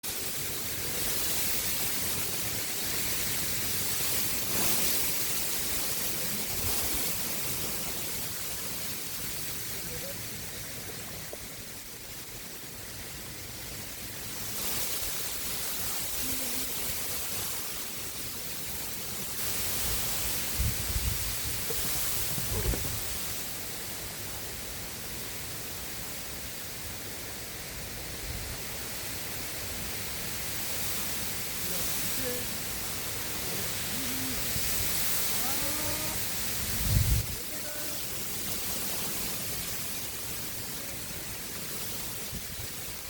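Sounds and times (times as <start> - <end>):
river water rushing: 0.0 - 43.0
wind gusting across microphone: 14.2 - 24.1, 27.6 - 43.0.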